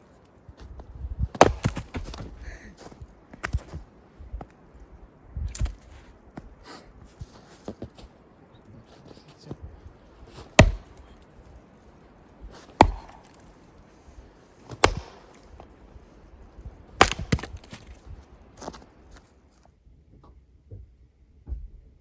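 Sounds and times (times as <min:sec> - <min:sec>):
wood being chopped: 0:01.3 - 0:02.4, 0:05.5 - 0:05.8, 0:10.4 - 0:11.3, 0:12.6 - 0:13.6, 0:14.7 - 0:15.7, 0:17.0 - 0:18.0.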